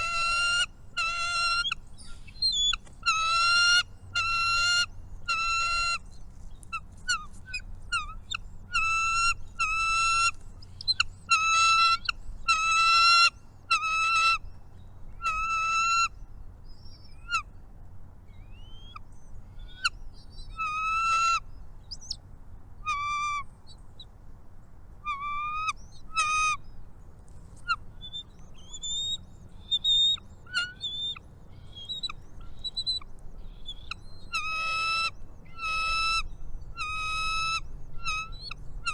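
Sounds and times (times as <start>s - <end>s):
birds nasal calls: 0.0s - 14.4s, 27.6s - 38.9s.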